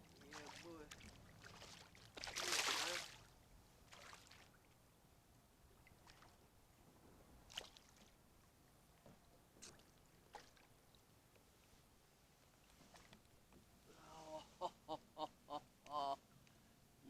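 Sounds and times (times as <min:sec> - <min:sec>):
faint water splashes and knocks: 0:00.0 - 0:04.8, 0:05.8 - 0:11.8, 0:12.4 - 0:13.8.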